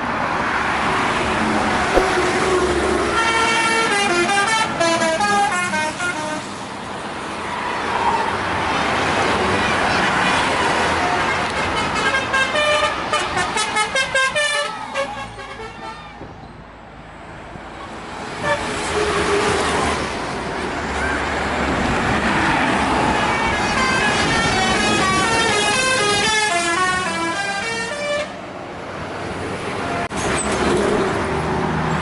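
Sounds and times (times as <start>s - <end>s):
bus engine and road noise: 0.0s - 32.0s
multi-tone bus air horn melody: 3.2s - 6.6s, 11.7s - 16.0s, 23.6s - 28.4s.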